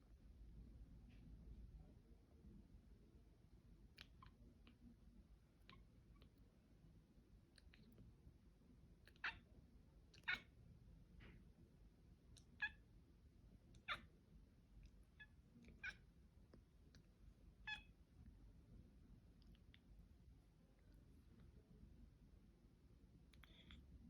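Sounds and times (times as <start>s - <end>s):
cat chirping: 9.0s - 9.4s, 10.2s - 10.5s, 12.4s - 12.8s, 13.7s - 14.1s, 15.0s - 16.1s, 17.6s - 18.0s.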